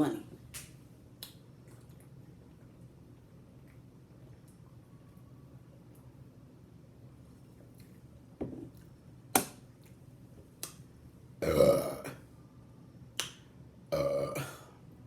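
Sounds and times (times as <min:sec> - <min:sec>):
woman burping loudly: 0:11.4 - 0:12.2, 0:13.9 - 0:14.7.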